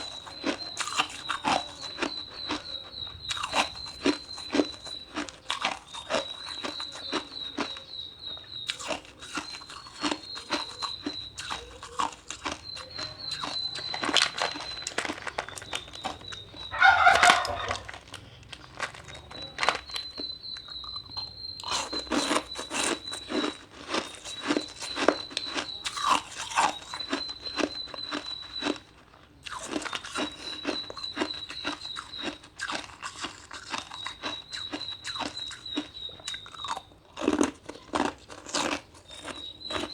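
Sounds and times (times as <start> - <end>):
ice crunching while chewed: 0.0 - 39.9
loud call: 13.3 - 18.1.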